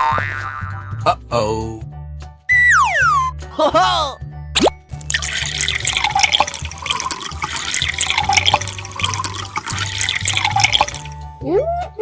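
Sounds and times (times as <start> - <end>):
water drips and pops: 4.9 - 11.2
cartoon bubbling water: 5.0 - 11.2.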